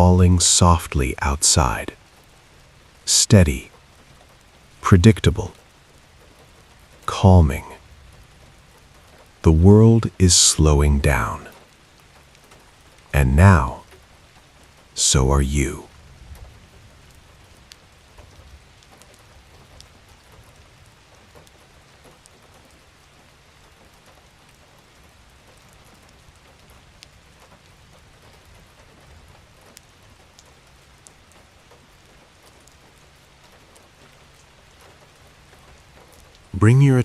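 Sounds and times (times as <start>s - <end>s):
rain hissing: 0.0s - 24.4s, 25.0s - 37.0s
raindrop ticks: 0.0s - 36.6s.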